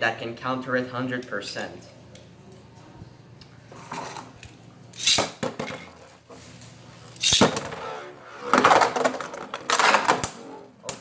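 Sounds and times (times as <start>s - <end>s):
spinning tops clashing in stadium: 5.0s - 5.4s.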